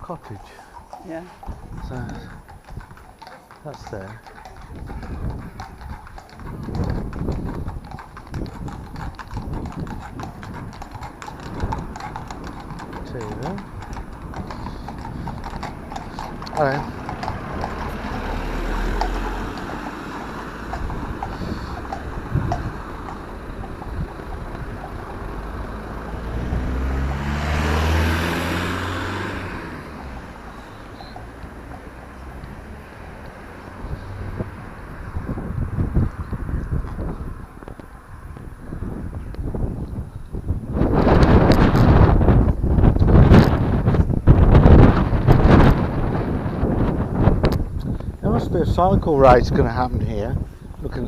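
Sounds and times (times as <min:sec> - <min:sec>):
horse hooves on pavement: 0:00.0 - 0:51.0
vehicle driving past: 0:00.3 - 0:38.8.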